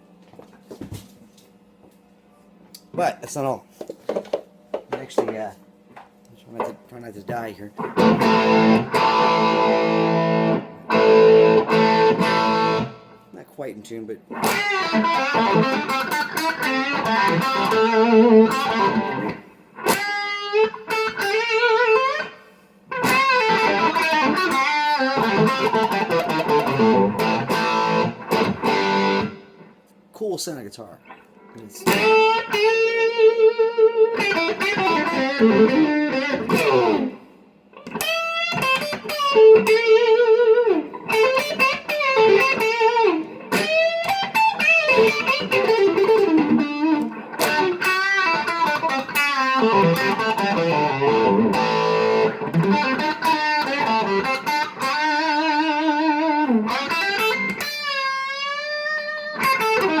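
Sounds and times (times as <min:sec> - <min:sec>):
electric guitar lead lines: 0:07.8 - 0:13.4, 0:14.1 - 0:29.8, 0:31.0 - 1:00.0.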